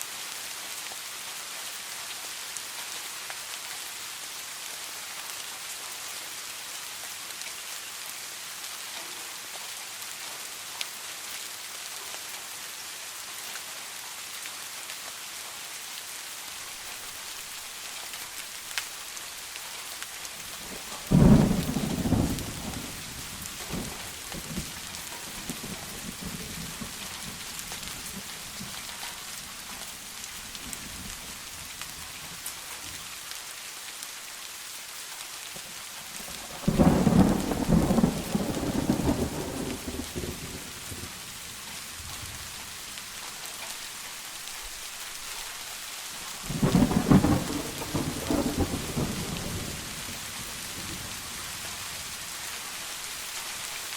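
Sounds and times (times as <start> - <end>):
rain hissing: 0.0 - 53.9
rumbling thunderclaps: 20.7 - 28.7, 36.6 - 40.8, 46.5 - 51.2.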